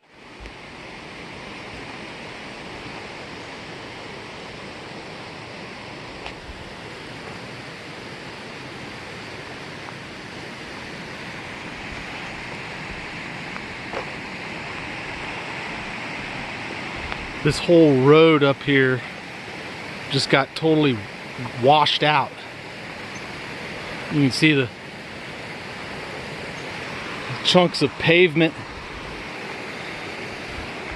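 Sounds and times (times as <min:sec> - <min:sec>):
river water rushing: 0:00.0 - 0:30.9.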